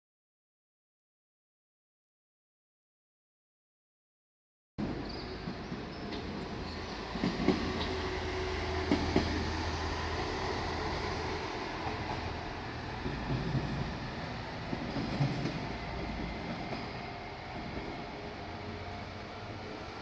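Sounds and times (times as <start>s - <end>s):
railcar engine drone: 4.8s - 20.0s
wheels clacking over rail joints: 4.8s - 20.0s.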